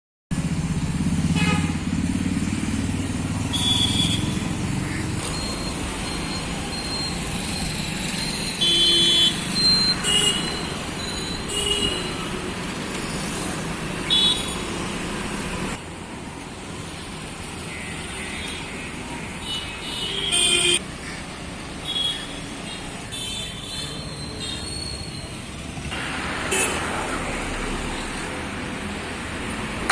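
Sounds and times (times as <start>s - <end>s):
engine and road rumble: 0.3s - 29.9s
vehicle horns honking: 1.3s - 1.8s, 3.5s - 4.9s, 8.5s - 12.3s, 14.1s - 14.7s, 19.4s - 20.8s, 26.5s - 26.9s.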